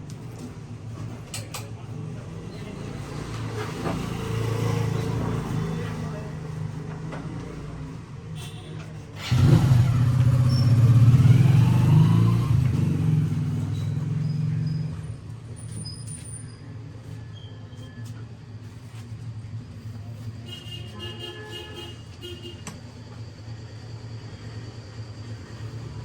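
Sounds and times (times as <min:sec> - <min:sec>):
traffic noise: 0:00.0 - 0:26.0
vehicle engine speeding up: 0:09.2 - 0:15.0
car horn tooting: 0:20.5 - 0:22.7.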